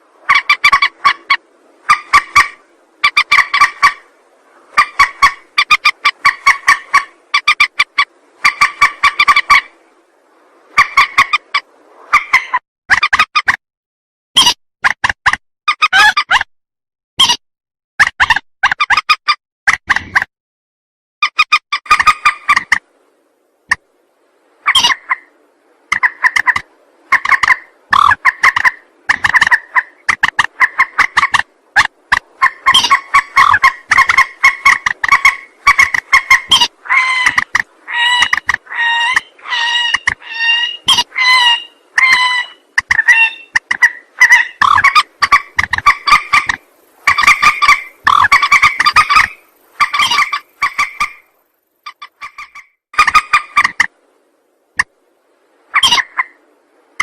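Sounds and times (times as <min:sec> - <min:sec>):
rail bird calling: 0:00.1 - 0:10.0, 0:10.7 - 0:13.2, 0:24.5 - 0:53.9, 0:55.7 - 0:56.5.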